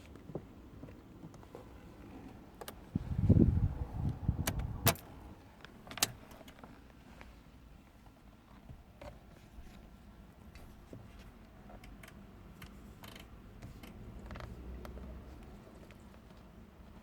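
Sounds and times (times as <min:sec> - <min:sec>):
car cabin rumble: 0:00.0 - 0:17.0
light clicks and rattles: 0:07.9 - 0:17.0.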